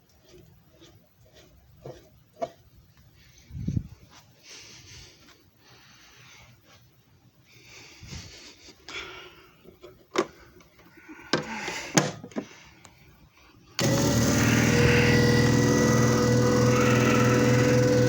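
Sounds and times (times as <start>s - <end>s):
machine motor humming and whining: 13.8s - 18.0s.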